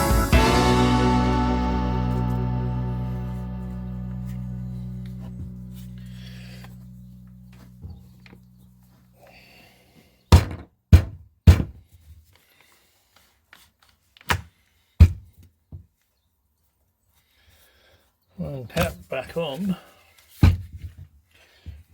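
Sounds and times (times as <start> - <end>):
background music: 0.0 - 7.6.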